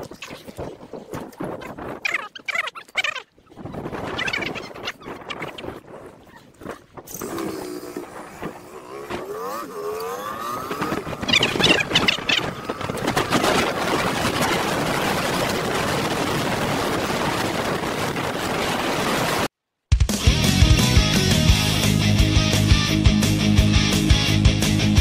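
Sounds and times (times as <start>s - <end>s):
wind noise: 0.0s - 2.4s, 3.4s - 8.7s, 10.2s - 19.5s
motorcycle engine accelerating: 7.2s - 13.9s.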